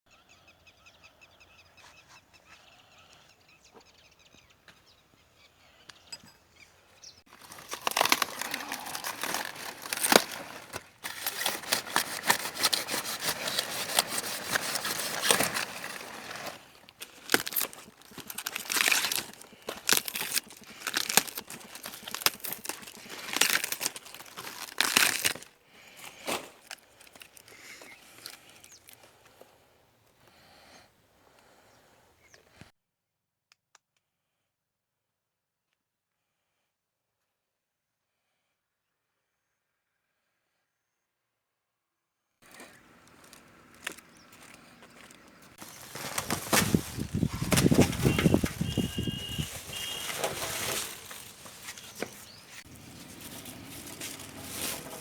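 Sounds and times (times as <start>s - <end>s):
crackling and rustling: 7.3s - 29.4s, 42.4s - 55.0s.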